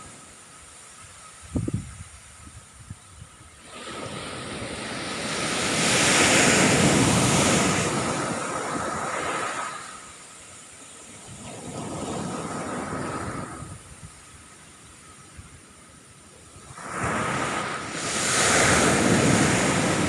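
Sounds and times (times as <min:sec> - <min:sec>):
ocean wave breaking: 0:03.6 - 0:10.3, 0:11.2 - 0:13.8, 0:16.6 - 0:20.0.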